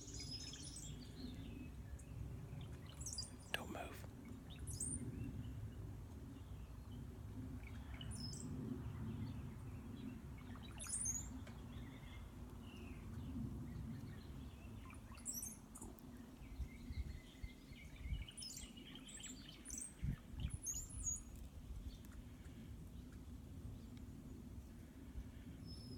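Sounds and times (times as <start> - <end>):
birds chirping: 0.0 - 5.6
steady low rumble: 0.0 - 10.6.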